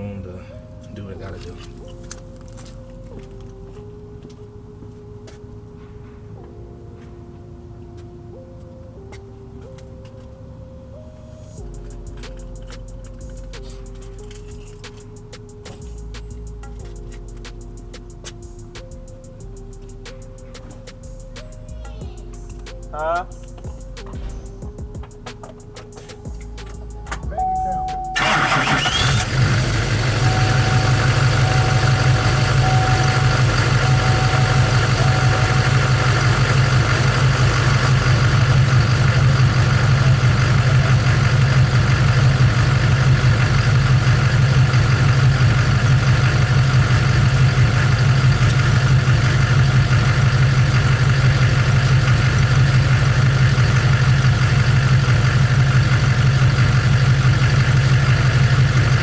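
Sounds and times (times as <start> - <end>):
truck engine idling: 22.4 - 59.0
repeating beep: 27.3 - 28.2.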